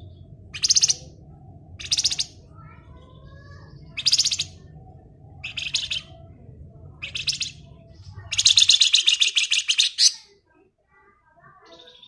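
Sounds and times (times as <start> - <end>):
faint low hum: 0.0 - 12.0
bird rattling trills: 0.5 - 1.1, 5.4 - 6.2, 8.2 - 10.1.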